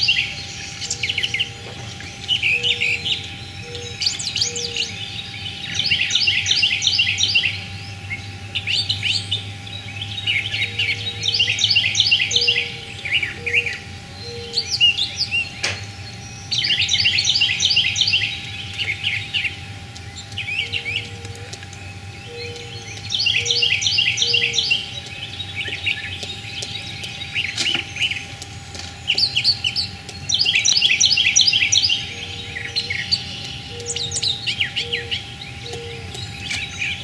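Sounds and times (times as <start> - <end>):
songbird singing high notes: 0.0 - 21.4.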